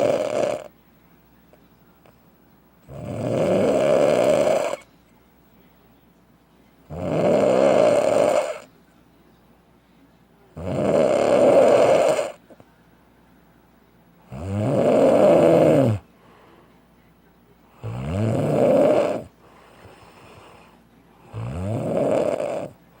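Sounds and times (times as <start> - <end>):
man snoring loudly: 0.0 - 0.7, 2.9 - 4.8, 6.9 - 8.6, 10.6 - 12.4, 14.3 - 16.0, 17.8 - 19.3, 21.3 - 22.8
quiet breathing: 15.6 - 23.0.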